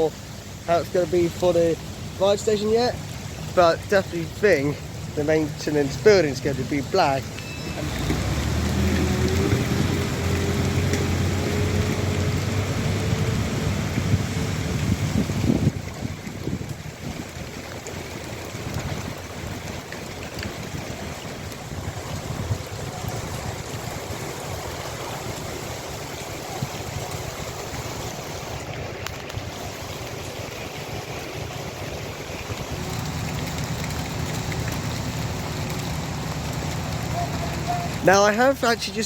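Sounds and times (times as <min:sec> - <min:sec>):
heavy rain hissing: 0:00.0 - 0:39.0
low engine rumble: 0:00.0 - 0:39.0
wind on microphone: 0:07.6 - 0:28.6.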